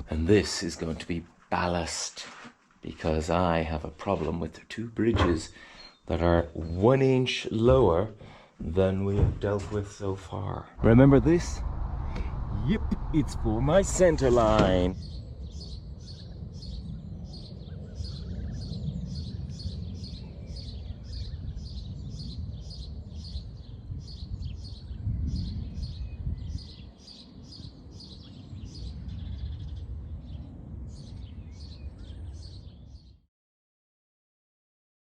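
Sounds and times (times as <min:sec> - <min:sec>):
low steady rumble: 0:10.7 - 0:15.6.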